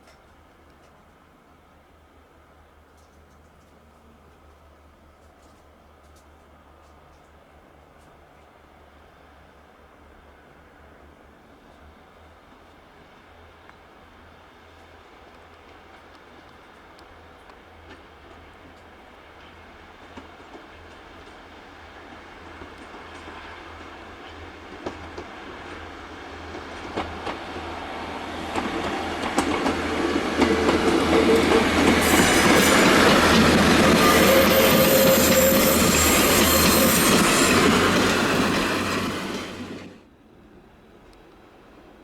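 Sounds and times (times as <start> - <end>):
diesel railbus passing: 5.6 - 42.0
high wheel squeal: 30.7 - 39.9.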